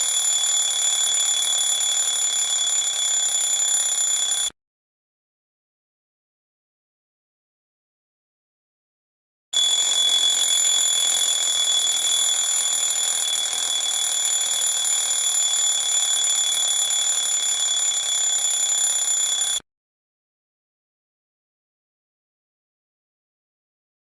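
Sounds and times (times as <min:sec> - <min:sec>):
alarm clock ringing: 0:00.0 - 0:04.5, 0:09.6 - 0:19.6.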